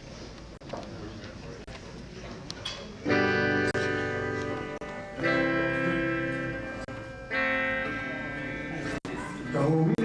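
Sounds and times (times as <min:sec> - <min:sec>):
strummed guitar chords: 0:03.0 - 0:10.0.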